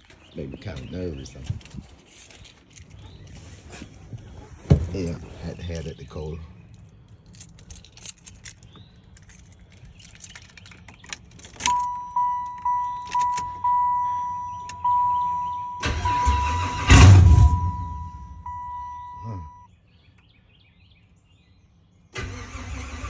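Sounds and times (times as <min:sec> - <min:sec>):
car keys jangling: 0:01.4 - 0:03.8, 0:06.7 - 0:19.6
engine cranking: 0:07.2 - 0:19.6, 0:22.2 - 0:23.0
dashboard chime beeping: 0:11.7 - 0:19.7.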